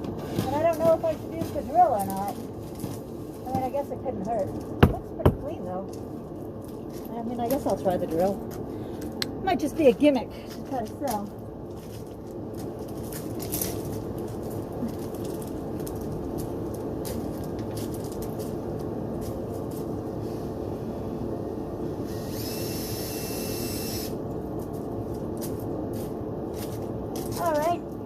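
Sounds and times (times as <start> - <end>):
clothes dryer running: 0.0 - 5.8
power drill whine: 22.0 - 24.2.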